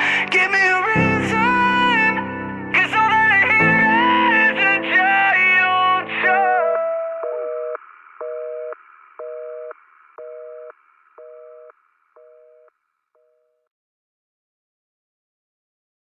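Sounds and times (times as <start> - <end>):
telephone busy signal beeps: 7.2 - 13.5.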